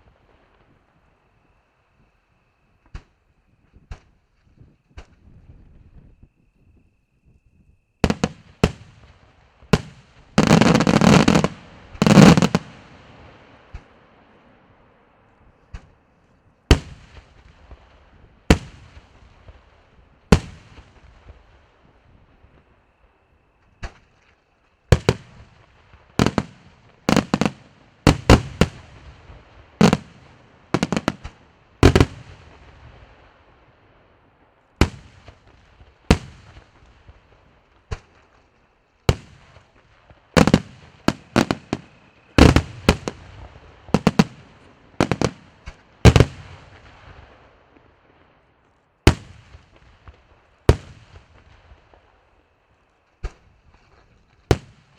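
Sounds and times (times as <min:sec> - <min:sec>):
fireworks bursting with bangs: 0:08.0 - 0:14.6, 0:16.7 - 0:21.8, 0:24.9 - 0:33.6, 0:34.3 - 0:48.4, 0:49.0 - 0:52.3, 0:53.2 - 0:54.9.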